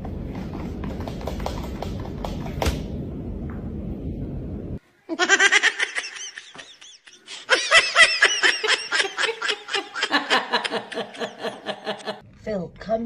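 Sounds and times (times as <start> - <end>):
high-pitched laughter: 5.1 - 12.2.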